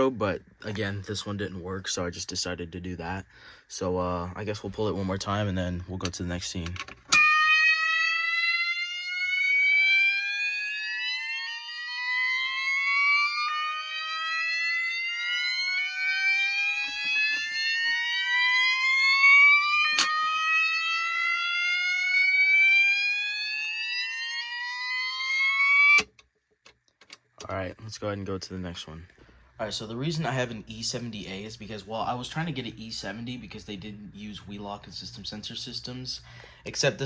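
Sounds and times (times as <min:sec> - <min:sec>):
fire alarms slow whooping: 0:07.1 - 0:26.1, 0:29.3 - 0:36.6.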